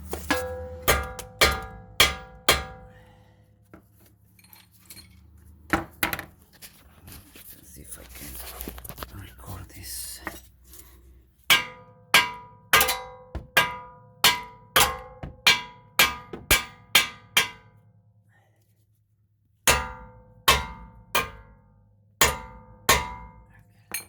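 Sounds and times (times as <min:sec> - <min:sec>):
hammer striking metal: 0:00.1 - 0:03.0, 0:11.5 - 0:17.7, 0:19.7 - 0:21.6, 0:22.2 - 0:24.0.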